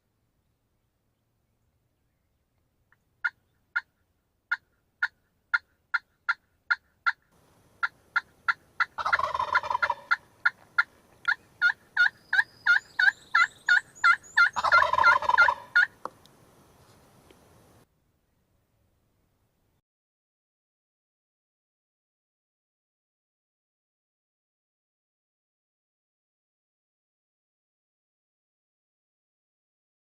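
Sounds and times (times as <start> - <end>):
turkey yelping: 3.2 - 16.0
turkey gobbling: 3.2 - 16.1.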